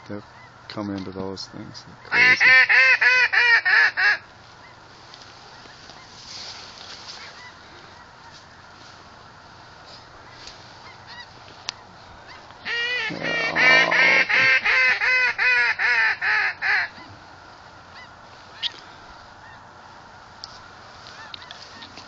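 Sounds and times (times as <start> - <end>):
faint distant goose honks: 0.2 - 20.0, 21.0 - 22.0
goose honking: 2.0 - 4.8, 7.2 - 8.6, 10.2 - 11.4, 12.2 - 17.1, 17.9 - 18.8.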